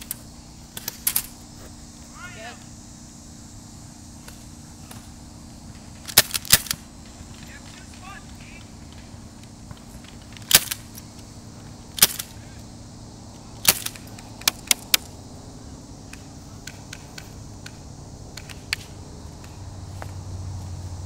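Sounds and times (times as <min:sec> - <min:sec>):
low steady hum: 0:00.0 - 0:21.0
airsoft gun shots: 0:10.4 - 0:10.9, 0:12.0 - 0:12.3, 0:13.6 - 0:15.1.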